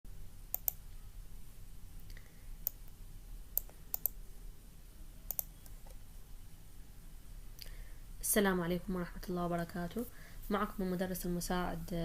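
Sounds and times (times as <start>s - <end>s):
low steady hum: 0.1s - 12.0s
computer mouse clicks: 0.5s - 1.0s, 2.0s - 3.0s, 3.6s - 4.2s, 5.3s - 6.0s.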